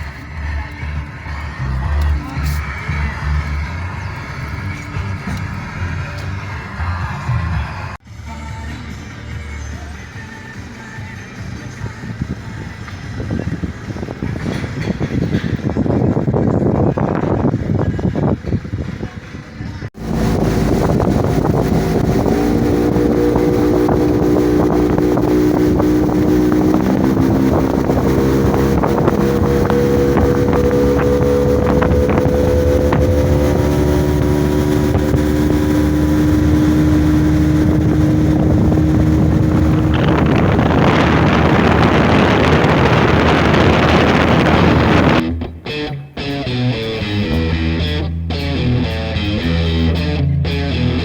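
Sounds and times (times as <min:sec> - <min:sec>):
wind buffeting microphone: 0:11.8 - 0:45.2
outboard motor running: 0:20.0 - 0:45.2
rushing wind and water: 0:20.0 - 0:45.2.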